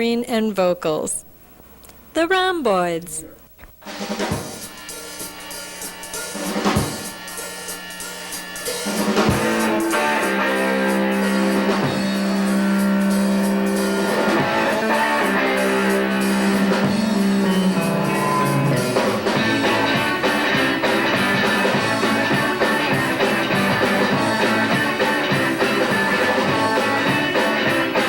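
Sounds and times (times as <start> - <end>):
drum hits: 3.8 - 4.8, 6.4 - 7.2, 8.8 - 10.0, 18.8 - 28.0
rock band playing: 3.9 - 28.0.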